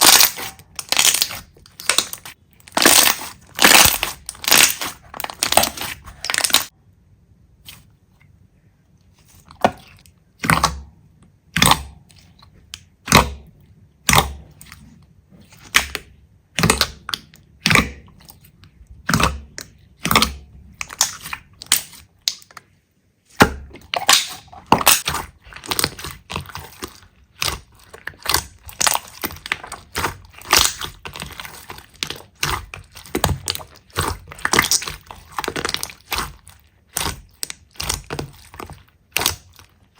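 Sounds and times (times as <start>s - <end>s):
slime crackling pops: 28.2s - 39.5s.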